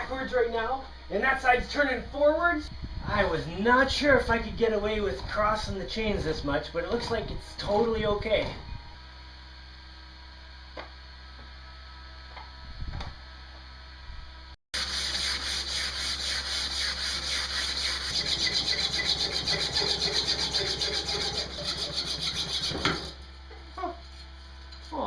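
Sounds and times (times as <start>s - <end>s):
electrical hum: 0.0s - 14.5s
hand tool scraping metal: 14.8s - 23.2s.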